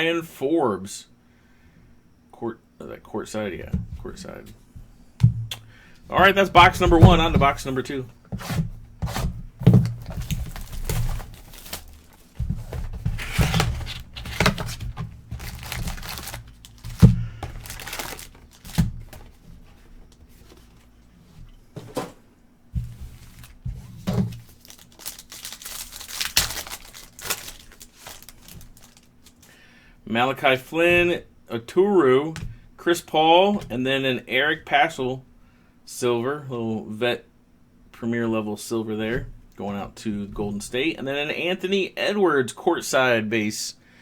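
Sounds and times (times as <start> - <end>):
cardboard and cards knocking: 5.2 - 20.8, 22.8 - 25.3
plastic wrapping tearing: 9.8 - 19.4, 24.2 - 29.5.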